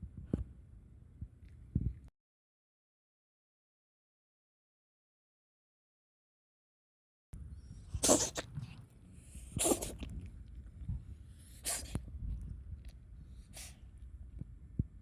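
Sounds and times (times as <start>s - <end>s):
cat coughing: 8.0s - 8.6s, 9.6s - 10.0s, 11.6s - 12.0s.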